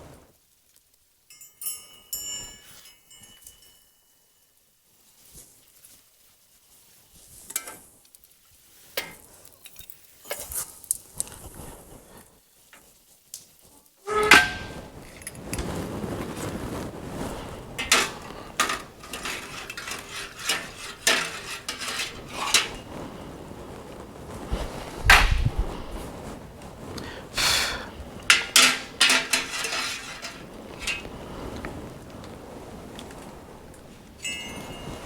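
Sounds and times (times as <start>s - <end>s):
steady background hiss: 0.0s - 35.0s
metal pieces clinking: 17.8s - 22.9s, 28.3s - 31.1s.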